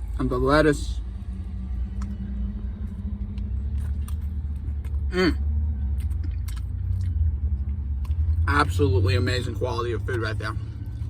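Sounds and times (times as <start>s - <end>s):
low rumble: 0.0s - 11.0s
person chewing: 3.2s - 8.4s.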